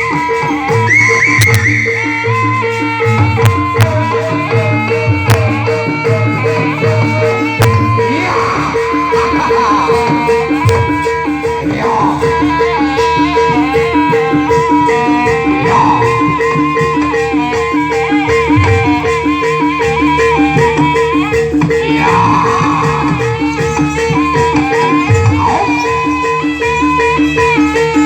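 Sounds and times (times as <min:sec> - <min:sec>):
drums: 0:00.0 - 0:28.0
pitched percussion tones: 0:00.0 - 0:28.0
reedy wind instrument melody: 0:00.0 - 0:28.0.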